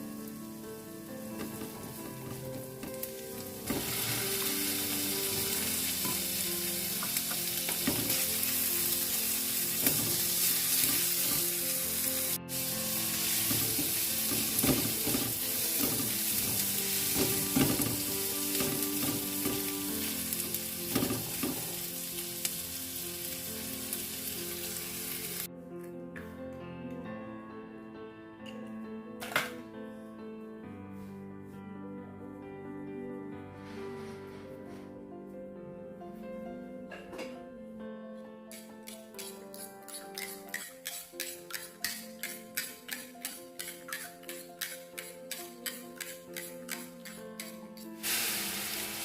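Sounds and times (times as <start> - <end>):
food sizzling in a pan: 0.0 - 25.5, 38.6 - 49.0
soft background music: 0.0 - 49.0.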